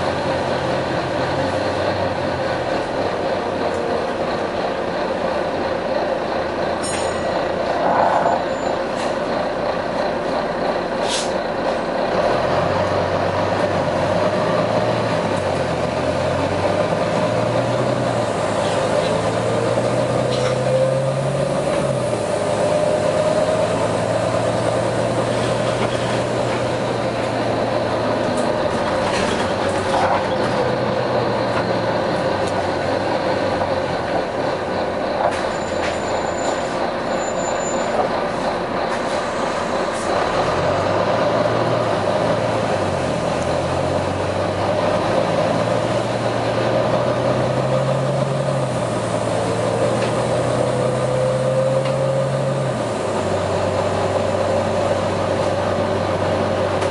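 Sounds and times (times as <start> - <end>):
bus engine running: 0.0 - 56.9.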